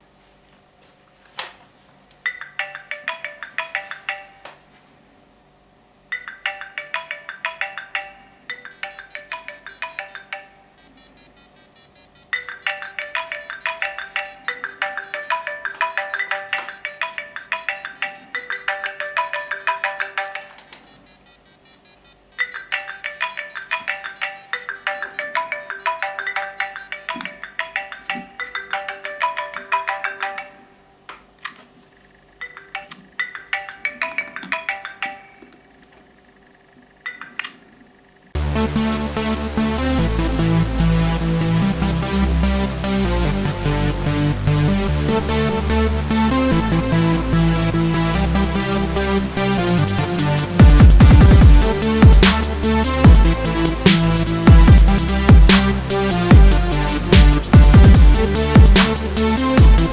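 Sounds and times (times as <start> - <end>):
electronic alarm melody: 7.9 - 27.5, 38.4 - 59.9.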